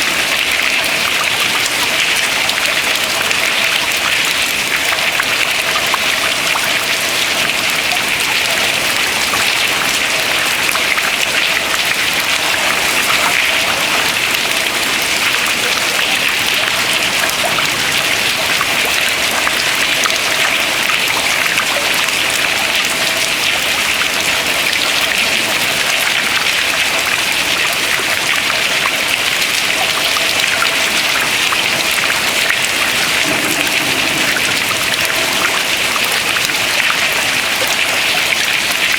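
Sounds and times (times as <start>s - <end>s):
water dripping into water: 0.0s - 38.9s
watery hiss: 32.6s - 37.1s.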